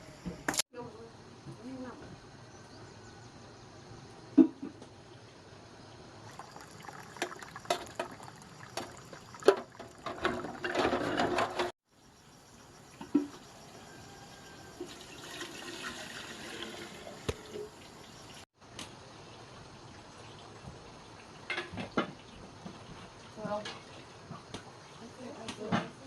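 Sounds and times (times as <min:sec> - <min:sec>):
steady running water: 0:06.2 - 0:11.7, 0:14.8 - 0:18.4
water splashing and pouring: 0:06.2 - 0:11.7, 0:14.8 - 0:18.4.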